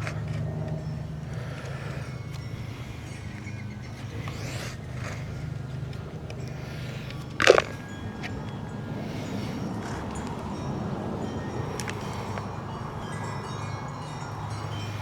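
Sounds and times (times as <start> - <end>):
scrapes of soil being dug: 4.0 - 8.2.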